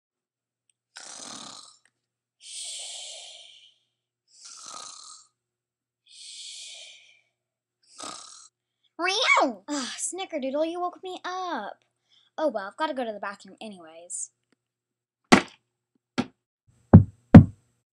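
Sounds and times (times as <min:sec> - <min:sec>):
person snoring: 0:01.0 - 0:01.8, 0:02.4 - 0:05.3, 0:07.9 - 0:08.5
hissing breath out: 0:02.4 - 0:03.8.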